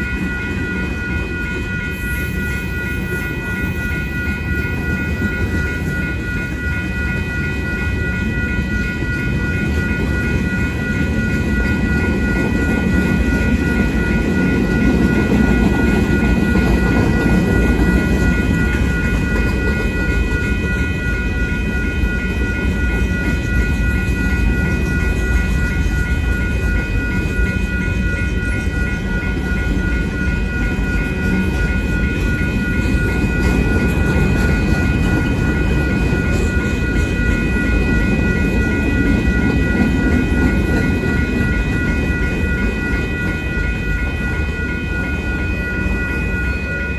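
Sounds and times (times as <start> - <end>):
railroad crossing bell ringing: 0.0 - 46.9
train wheels rumbling on rail: 0.0 - 46.9.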